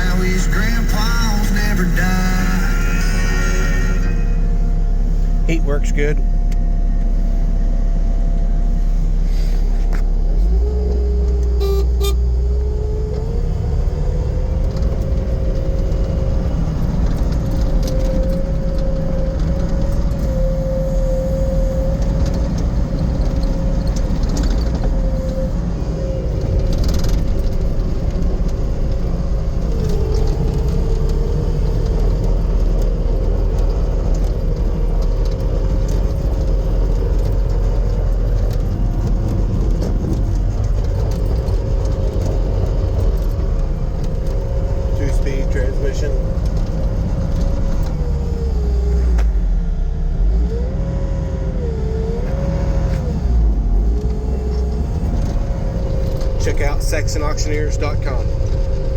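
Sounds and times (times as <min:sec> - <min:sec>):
diesel engine running: 0:00.0 - 0:58.9
engine whine: 0:00.0 - 0:58.9.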